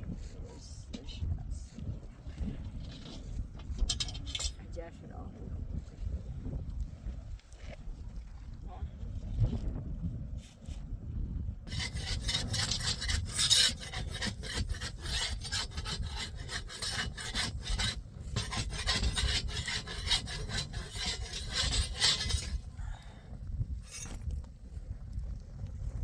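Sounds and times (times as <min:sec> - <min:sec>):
hand tool rasping: 0:11.7 - 0:22.7, 0:23.8 - 0:24.2.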